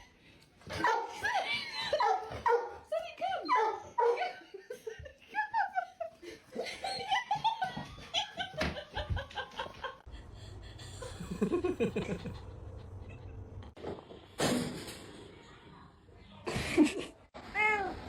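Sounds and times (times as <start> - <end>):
person laughing: 4.3 - 13.4.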